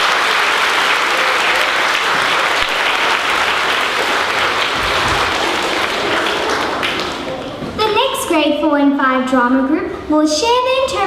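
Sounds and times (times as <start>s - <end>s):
audience applauding: 0.0s - 7.7s.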